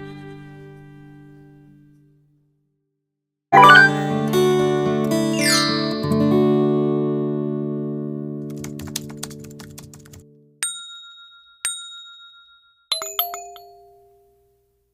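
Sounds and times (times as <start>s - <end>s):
chime notes: 3.6s - 4.0s
plucked chord: 3.6s - 4.1s.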